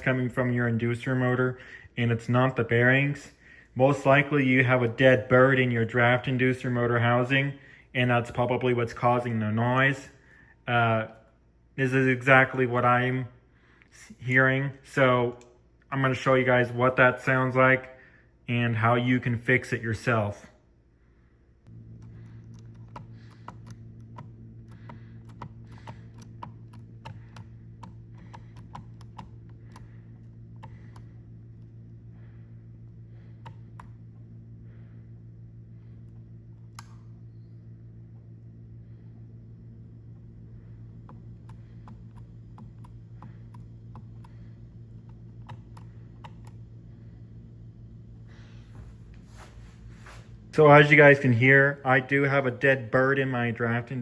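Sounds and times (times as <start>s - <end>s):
motor humming: 21.0s - 54.0s
sharp clicking inside housing: 21.6s - 31.8s, 36.0s - 37.5s.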